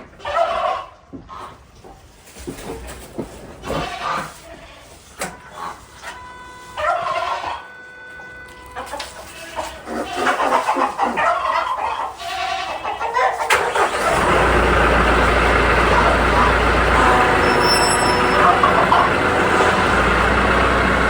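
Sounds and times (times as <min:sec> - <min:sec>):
poultry calling: 0:03.7 - 0:07.8, 0:08.6 - 0:21.0
engine running with deep hum: 0:13.8 - 0:21.0.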